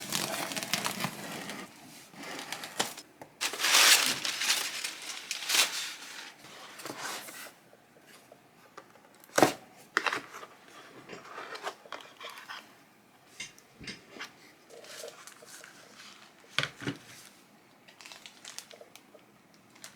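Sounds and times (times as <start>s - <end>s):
packaging crinkling and tearing: 0.0s - 6.4s, 17.9s - 19.1s, 19.7s - 19.9s.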